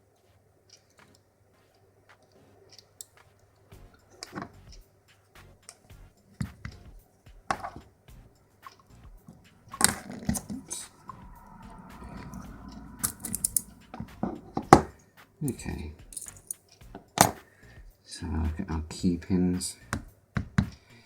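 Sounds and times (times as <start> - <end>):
metal lock parts clicking and scraping: 16.1 - 17.5.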